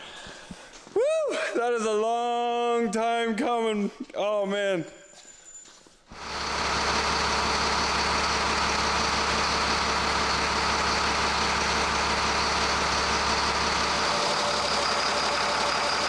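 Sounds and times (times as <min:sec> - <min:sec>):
diesel engine idling: 0:06.1 - 0:16.0.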